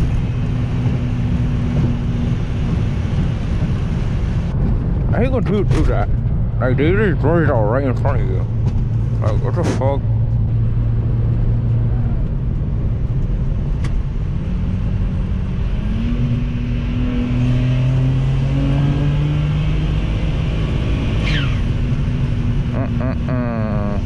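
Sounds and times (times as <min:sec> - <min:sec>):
car engine drone: 0:00.0 - 0:24.0
falling turbo whistle: 0:21.2 - 0:22.0.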